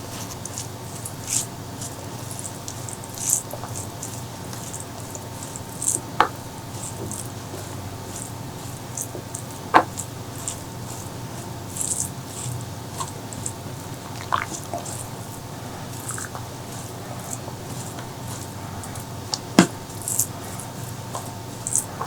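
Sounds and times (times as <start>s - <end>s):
wet chewing and mouth smacks: 11.7s - 20.4s.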